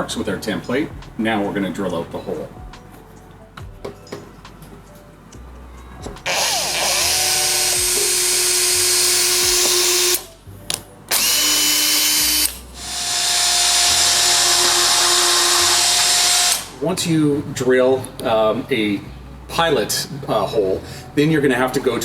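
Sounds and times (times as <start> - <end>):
power drill boring into wood: 6.2 - 10.3, 11.1 - 16.8.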